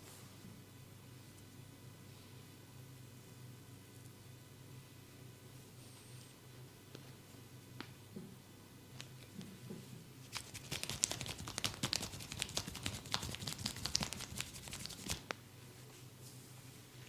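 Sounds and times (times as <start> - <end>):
hands tapping and slapping skin: 10.3 - 15.3.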